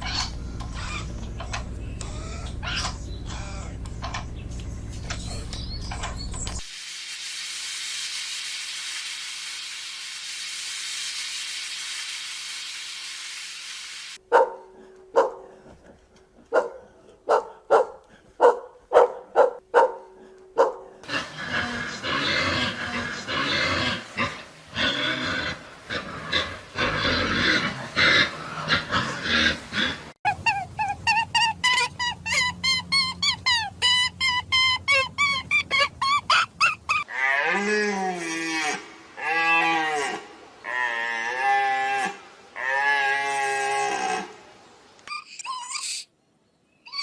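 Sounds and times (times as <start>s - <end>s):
overlapping animal calls: 0.0s - 4.2s, 21.0s - 37.5s
steady hiss: 6.4s - 14.2s
dog barking: 14.3s - 15.6s, 16.5s - 21.0s.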